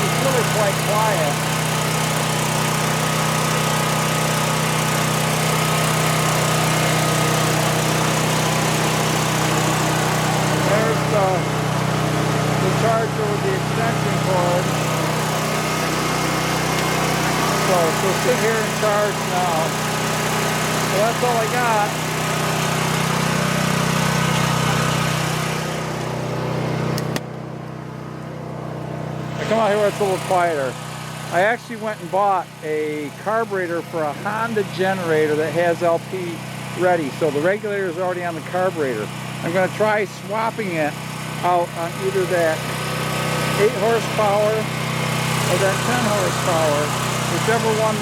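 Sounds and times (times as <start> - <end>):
generator engine running: 0.0 - 48.0.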